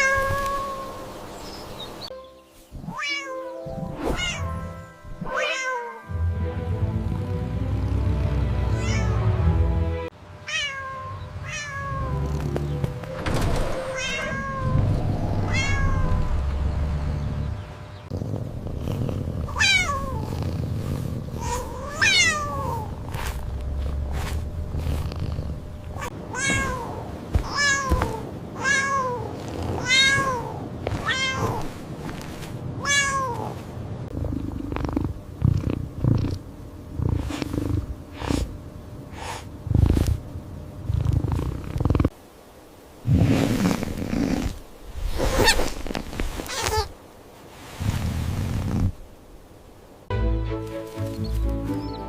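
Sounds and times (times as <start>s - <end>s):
cat meowing: 0.0s - 1.0s, 5.3s - 6.1s, 8.8s - 9.2s, 10.5s - 12.3s, 14.0s - 16.3s, 19.5s - 20.3s, 21.4s - 22.9s, 26.0s - 31.7s, 32.8s - 33.5s
low purr: 6.6s - 9.2s, 11.8s - 28.2s, 28.8s - 32.5s, 33.3s - 42.2s, 43.0s - 46.9s, 47.8s - 49.0s
soft rustles and thumps: 23.1s - 25.4s, 26.4s - 28.3s, 29.4s - 32.6s, 43.4s - 49.0s.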